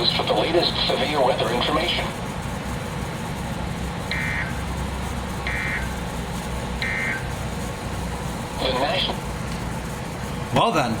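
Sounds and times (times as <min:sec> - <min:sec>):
low steady hum: 0:00.0 - 0:11.0
buzzy digital data bursts: 0:04.1 - 0:04.8, 0:05.4 - 0:06.2, 0:06.8 - 0:07.4.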